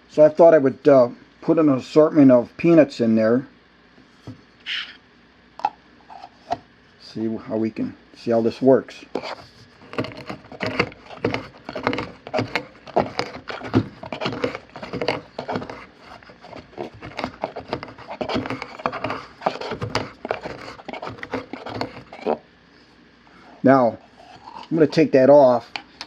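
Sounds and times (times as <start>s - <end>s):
pestle pounding in metal mortar: 9.9s - 22.4s.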